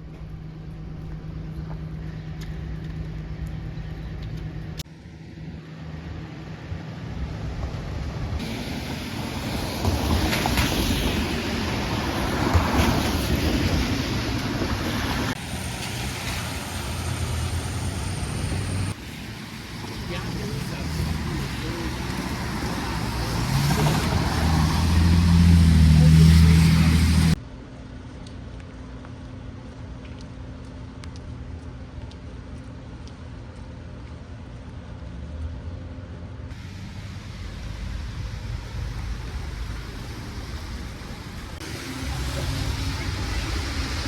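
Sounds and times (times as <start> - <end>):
large vehicle engine running: 0.0 - 4.8
muffled traffic hum: 0.0 - 44.0.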